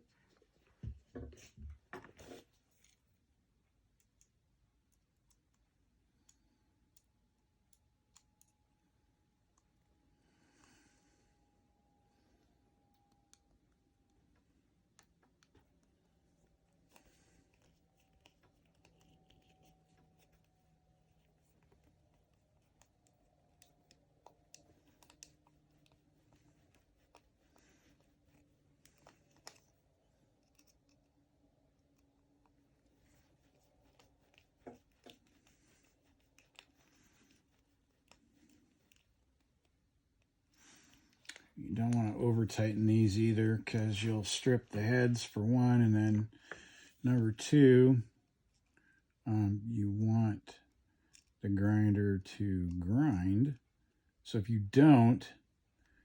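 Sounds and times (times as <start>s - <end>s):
faint clicks and handling: 0.0s - 10.8s, 12.1s - 42.7s, 50.6s - 51.4s
faint steady tone: 2.8s - 56.0s.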